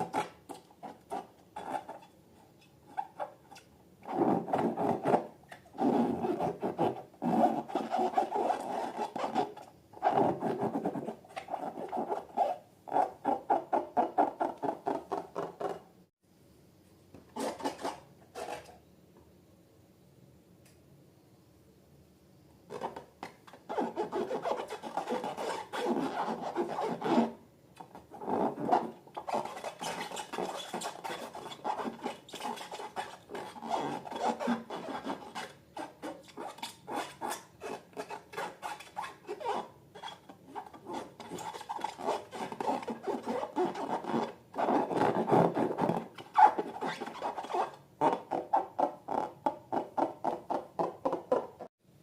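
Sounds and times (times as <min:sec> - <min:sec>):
slime and balloons rubbing and rasping: 0:23.7 - 0:27.4, 0:28.2 - 0:49.9.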